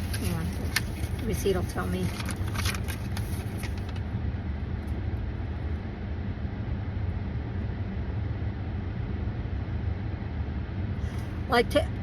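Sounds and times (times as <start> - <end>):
low rumble inside car: 0.0 - 12.0.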